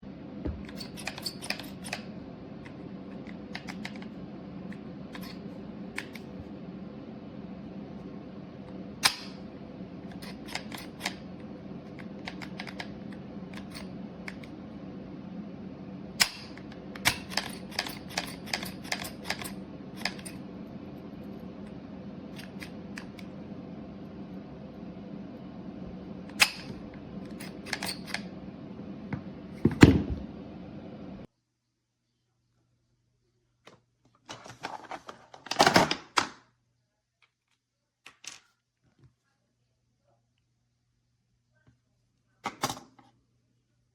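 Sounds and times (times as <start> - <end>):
steady low hum: 0.0 - 33.6.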